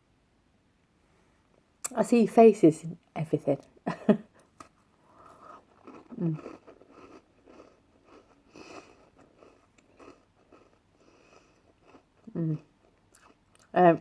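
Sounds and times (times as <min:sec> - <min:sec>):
person chewing food: 0:04.4 - 0:13.8.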